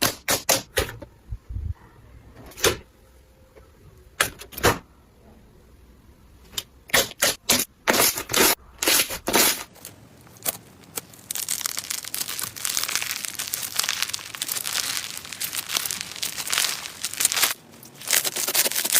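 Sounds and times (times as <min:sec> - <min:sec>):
slime crackling: 0:08.8 - 0:18.9.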